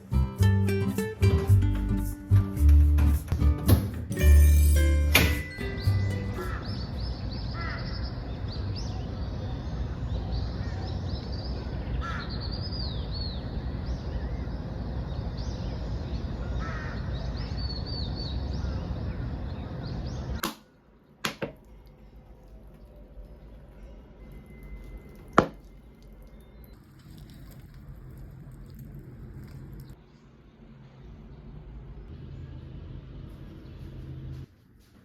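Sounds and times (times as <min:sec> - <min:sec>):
outdoor background rush: 0:04.2 - 0:21.0
birds chirping: 0:05.6 - 0:26.8.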